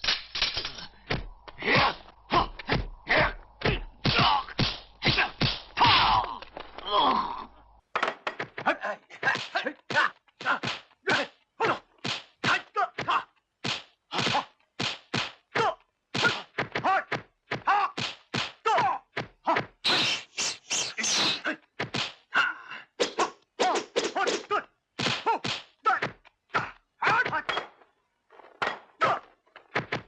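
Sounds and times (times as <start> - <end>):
punch and kick impacts: 3.6 - 6.1, 9.4 - 10.9, 12.0 - 15.4, 16.2 - 19.7, 25.0 - 26.2, 29.7 - 30.0.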